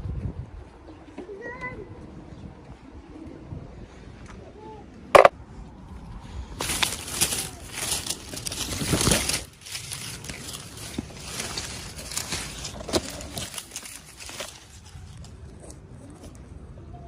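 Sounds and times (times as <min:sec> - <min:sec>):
packaging crinkling and rustling: 0:06.6 - 0:15.8.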